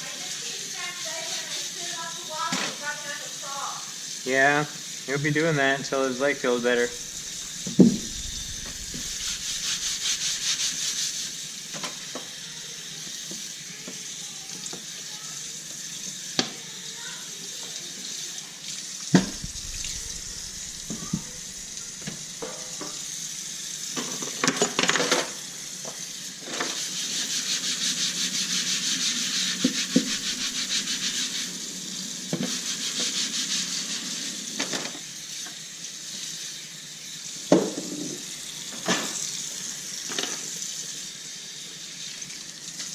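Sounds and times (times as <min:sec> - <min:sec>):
tap running into sink: 0:06.9 - 0:10.6, 0:19.1 - 0:23.1, 0:37.5 - 0:38.2.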